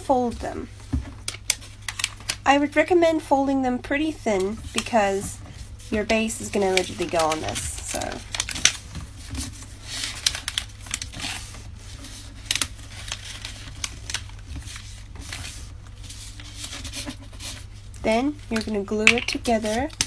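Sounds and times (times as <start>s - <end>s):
paper rustling and crinkling: 0.0s - 2.8s, 4.2s - 20.0s
paper creasing clicks: 4.3s - 20.0s.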